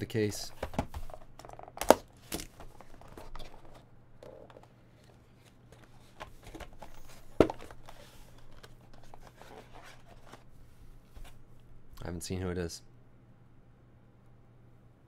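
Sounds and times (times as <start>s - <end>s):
cardboard box rustling: 4.5s - 10.5s.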